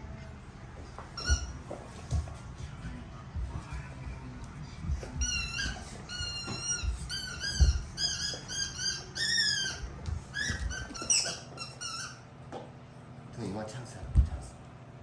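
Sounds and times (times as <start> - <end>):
soft low thuds: 0.7 - 8.3
squeaky dog toy squeaking: 1.2 - 1.6, 5.2 - 12.3.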